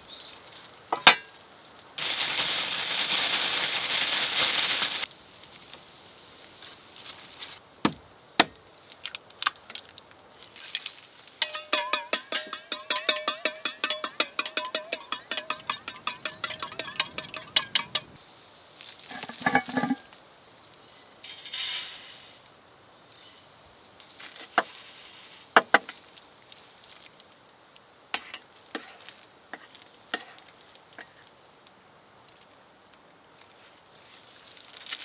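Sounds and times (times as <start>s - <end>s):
rustle: 0.0s - 35.0s
utensils and dishes clinking: 0.9s - 1.3s, 11.4s - 18.2s, 19.1s - 20.1s
utensil beating against bowl: 11.4s - 18.2s
brief hiss: 20.8s - 22.5s.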